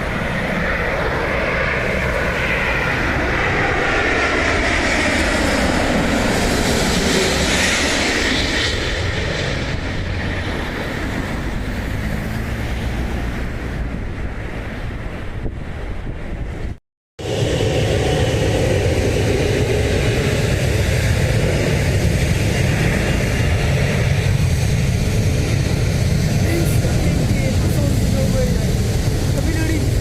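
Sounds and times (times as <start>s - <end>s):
jet airliner engines passing: 0.0s - 30.0s.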